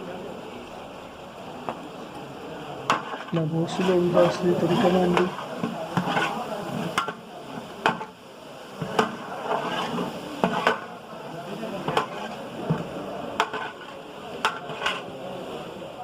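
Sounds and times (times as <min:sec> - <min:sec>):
food frying in oil: 0:00.0 - 0:16.0
ladle scraping cooking pot: 0:02.9 - 0:07.2, 0:08.8 - 0:10.9, 0:11.9 - 0:12.8, 0:13.4 - 0:15.1.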